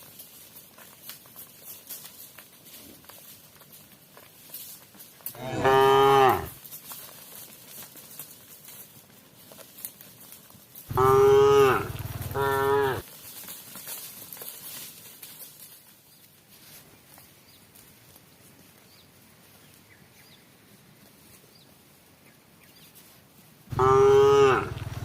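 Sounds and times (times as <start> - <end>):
cow mooing: 5.4 - 6.6, 10.9 - 13.0, 23.7 - 25.0.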